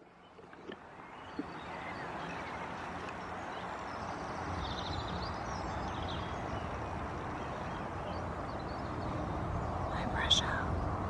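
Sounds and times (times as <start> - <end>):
outdoor background noise: 0.0 - 11.0.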